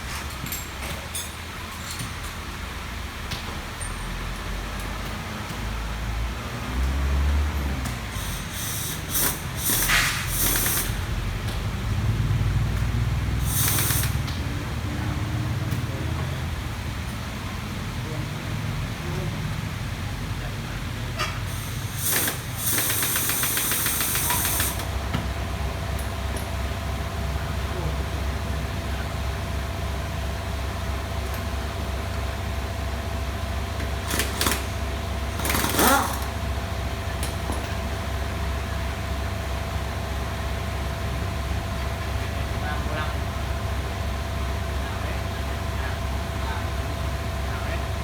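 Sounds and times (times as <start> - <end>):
short hissing sprays: 8.1 - 11.0, 13.4 - 14.2, 21.5 - 24.9
low motor rumble: 10.9 - 21.9, 24.7 - 48.0
small engine humming: 33.8 - 37.6.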